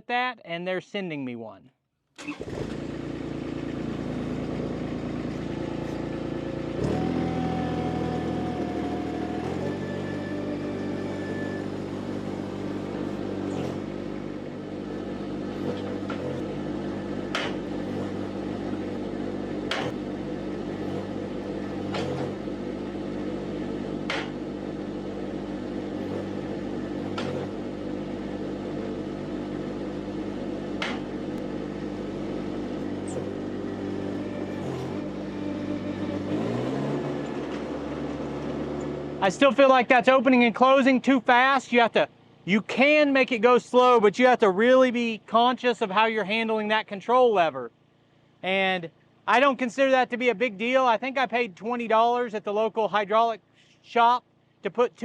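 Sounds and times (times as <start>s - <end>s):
hydraulic whine: 2.2s - 40.5s
skid steer engine running: 2.2s - 44.0s.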